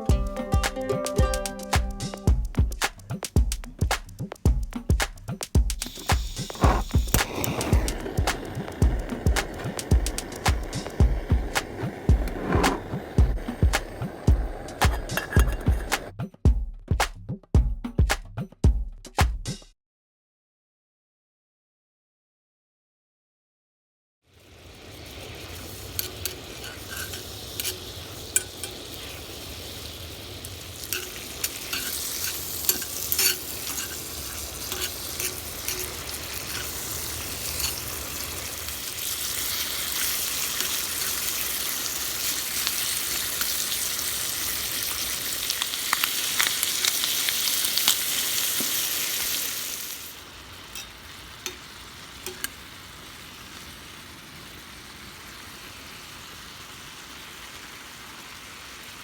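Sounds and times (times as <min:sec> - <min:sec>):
food sizzling in a frying pan: 0:00.0 - 0:16.1, 0:24.3 - 0:59.0
utensil scraping a pan: 0:05.8 - 0:16.1, 0:25.8 - 0:29.6, 0:30.4 - 0:38.0.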